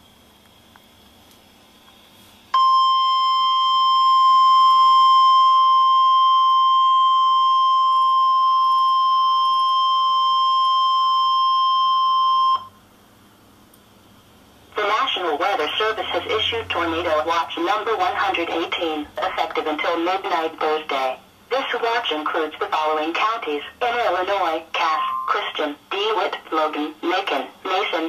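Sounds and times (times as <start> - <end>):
high-pitched warning tone: 24.8 - 25.6.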